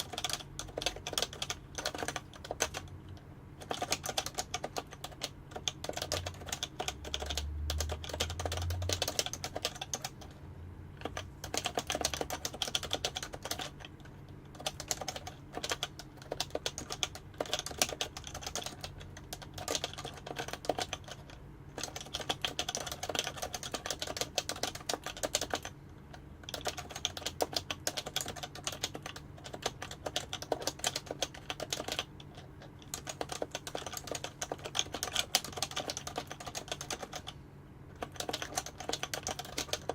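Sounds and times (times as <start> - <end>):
fast keyboard typing: 0.0 - 10.4, 11.0 - 39.9.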